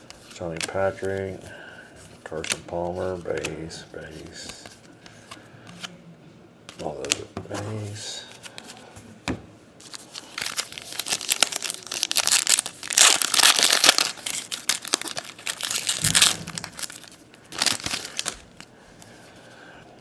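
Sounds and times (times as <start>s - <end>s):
plastic wrapper tearing and crinkling: 9.8s - 18.7s.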